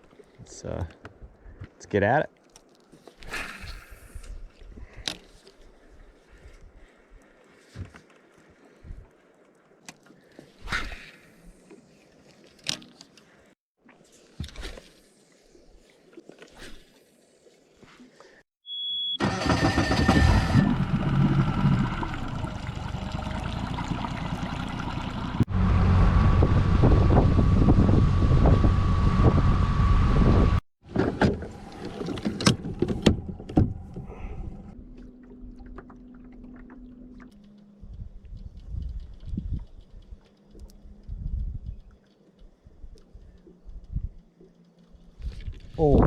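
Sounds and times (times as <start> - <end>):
short high beep: 18.6 - 19.2
boat motor running loudly: 19.5 - 29.7.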